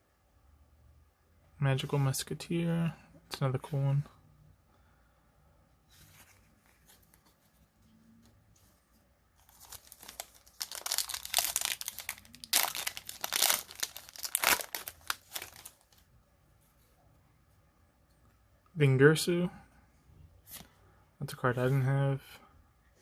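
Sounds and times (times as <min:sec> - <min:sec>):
foil wrapper tearing and crinkling: 0:09.5 - 0:15.8.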